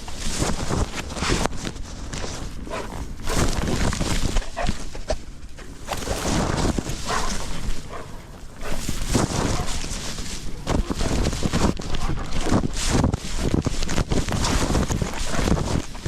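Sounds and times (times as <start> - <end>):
camera rustling and knocking: 0.0 - 16.0
wind rumble on microphone: 0.0 - 16.0.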